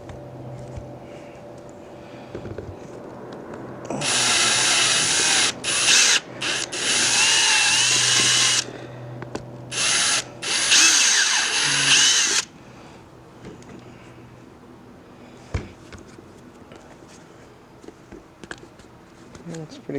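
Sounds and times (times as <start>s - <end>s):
power drill cutting: 3.9s - 8.8s, 9.7s - 12.5s.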